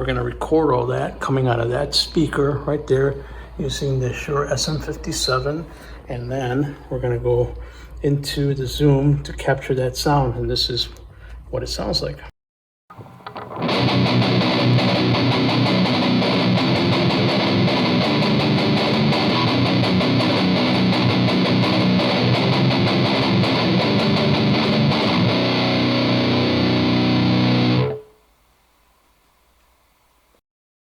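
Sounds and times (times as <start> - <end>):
distorted electric guitar riff: 12.9 - 28.1.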